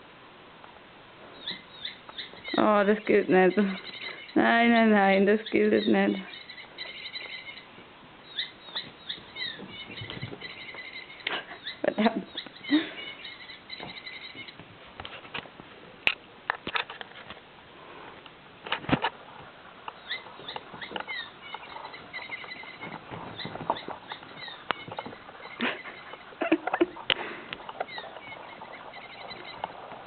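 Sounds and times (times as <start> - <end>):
toy mouse squeaking: 27.8 - 29.7.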